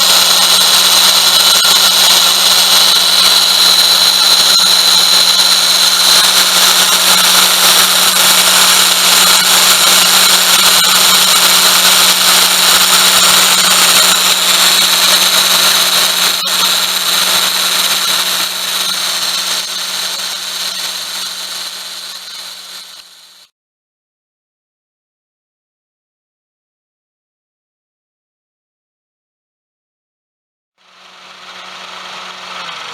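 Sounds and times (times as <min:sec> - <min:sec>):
car engine running: 0:00.0 - 0:23.1, 0:30.8 - 0:32.9
pulley bearing grinding whine: 0:00.0 - 0:23.5, 0:30.8 - 0:32.9.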